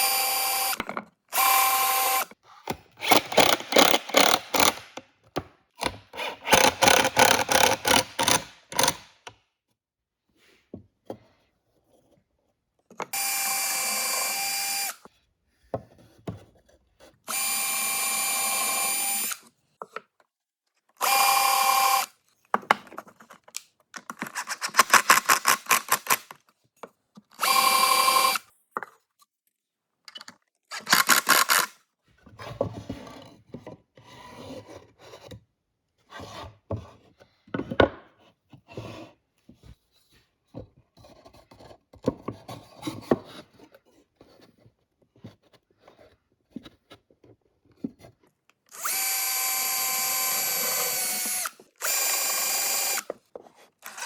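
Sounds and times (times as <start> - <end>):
power drill whine: 0.0 - 0.8, 1.4 - 2.3, 3.0 - 4.8, 13.2 - 15.0, 17.3 - 19.4, 21.0 - 22.1, 27.4 - 28.4, 48.7 - 53.1.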